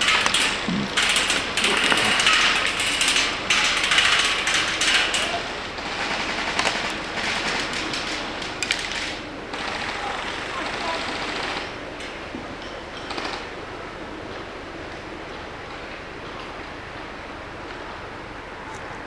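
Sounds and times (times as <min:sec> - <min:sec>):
airsoft guns firing bursts: 0:05.8 - 0:11.8.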